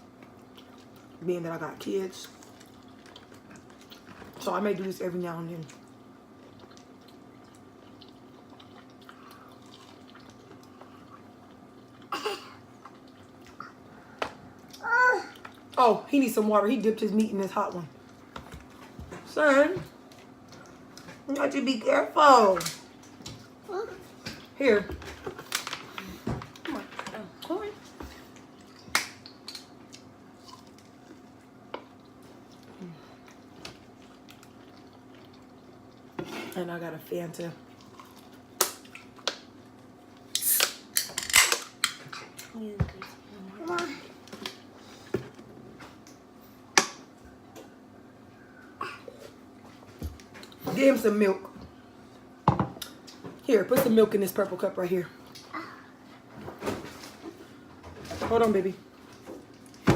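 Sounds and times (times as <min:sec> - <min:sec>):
faint steady hum: 0:00.0 - 0:59.9
people eating with wet clicks: 0:00.1 - 0:01.2, 0:01.9 - 0:04.4, 0:05.6 - 0:16.0, 0:16.8 - 0:19.2, 0:19.8 - 0:21.6, 0:22.3 - 0:23.6, 0:24.2 - 0:36.2, 0:37.6 - 0:47.8, 0:50.0 - 0:50.6, 0:52.6 - 0:53.4, 0:55.2 - 0:55.8, 0:59.1 - 0:59.9.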